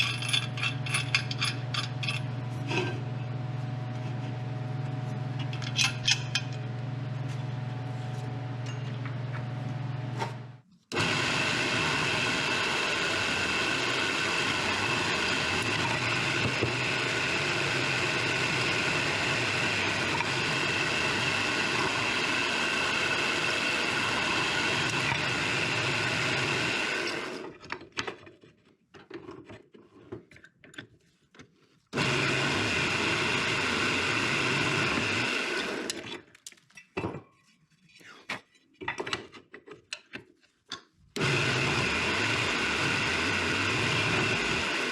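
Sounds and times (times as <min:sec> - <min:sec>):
power tool motor whine: 0:10.9 - 0:27.4, 0:41.2 - 0:44.9.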